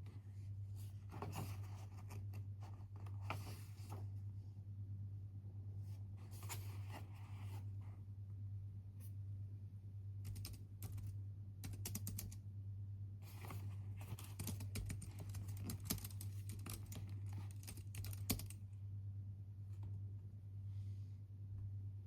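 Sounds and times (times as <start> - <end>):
low steady hum: 0.0 - 22.0
typing on computer keyboard: 10.2 - 12.4, 14.2 - 18.6.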